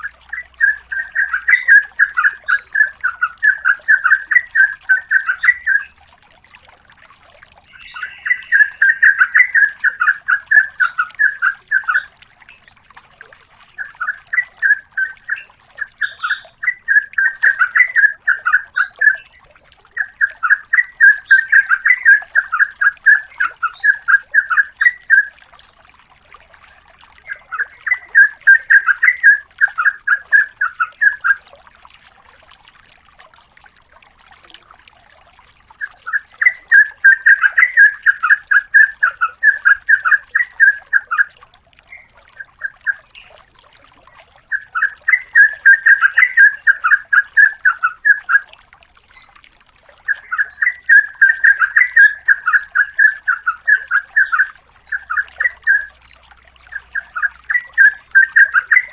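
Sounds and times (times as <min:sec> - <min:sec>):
bird singing rapid chattering phrases: 0:07.7 - 0:12.1, 0:44.5 - 0:58.9.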